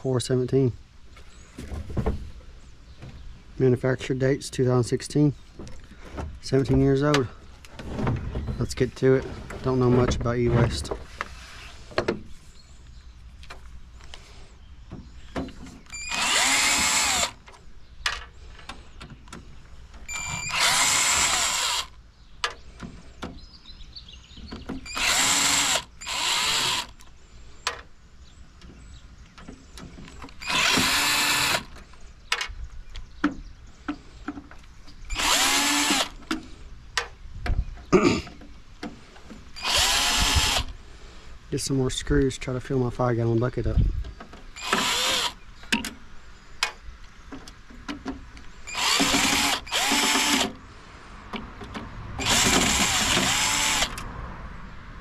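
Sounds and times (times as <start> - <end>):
power drill whirring: 15.9 - 17.4, 20.1 - 22.0, 24.8 - 27.0, 30.4 - 31.7, 35.1 - 36.2, 39.6 - 40.7, 44.6 - 45.4, 48.6 - 50.6, 52.2 - 54.0.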